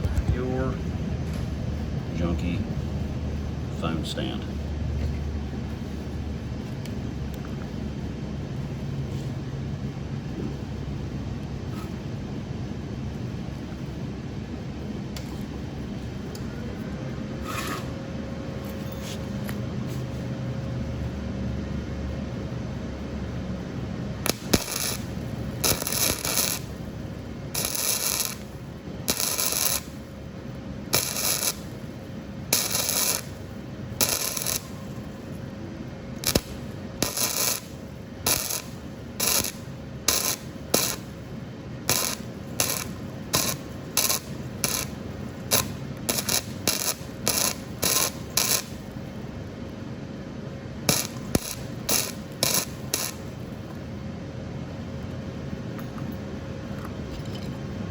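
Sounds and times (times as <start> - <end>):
faint steady hum: 0.0 - 57.9
welder arc crackling: 23.8 - 49.3, 50.8 - 53.8.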